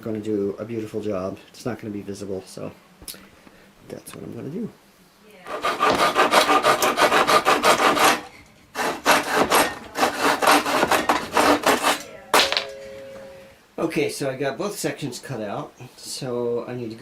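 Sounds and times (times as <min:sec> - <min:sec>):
hand saw cutting wood: 0:05.5 - 0:12.1.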